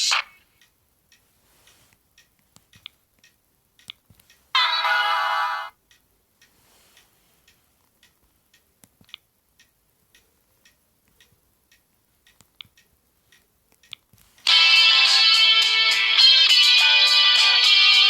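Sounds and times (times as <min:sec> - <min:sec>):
mobile phone melody: 0:04.6 - 0:05.7, 0:14.4 - 0:18.0.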